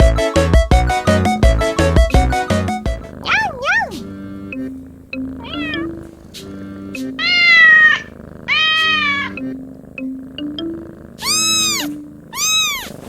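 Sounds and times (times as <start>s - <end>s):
background music with low notes: 0.0s - 3.1s
kitten meowing: 2.0s - 13.0s.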